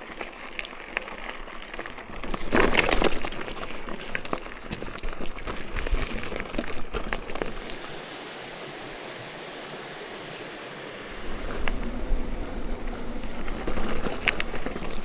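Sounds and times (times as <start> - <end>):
low uneven rumble: 0.0 - 15.0
waterfall rushing: 8.0 - 11.4.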